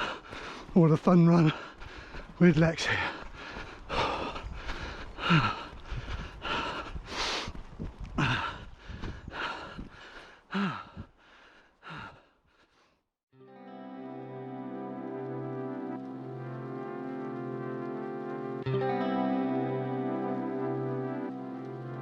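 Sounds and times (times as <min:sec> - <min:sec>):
runner gasping for breath: 0:00.0 - 0:13.1.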